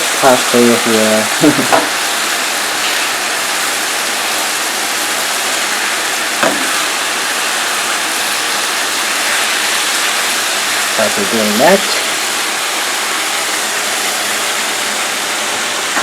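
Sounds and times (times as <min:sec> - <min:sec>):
meat sizzling in a pan: 0:00.0 - 0:16.0.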